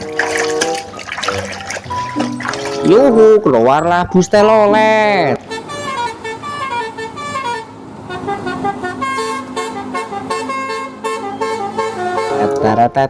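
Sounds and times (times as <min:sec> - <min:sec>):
multi-tone bus horn tune: 0:05.3 - 0:13.0.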